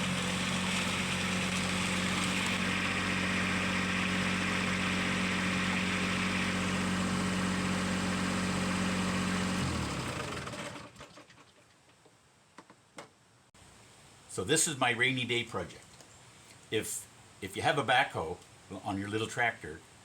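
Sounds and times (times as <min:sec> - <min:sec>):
diesel tractor engine running: 0:00.0 - 0:11.0.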